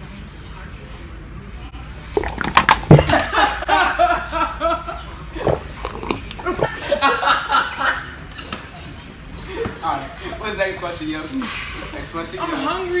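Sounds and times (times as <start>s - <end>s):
boys laughing loudly: 3.0s - 5.0s, 6.4s - 8.1s.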